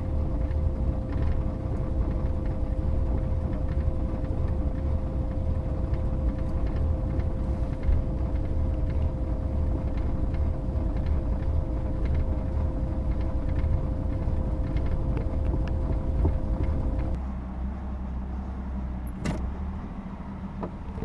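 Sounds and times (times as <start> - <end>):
car engine rumble: 0.0 - 21.0
low hum: 0.0 - 21.0.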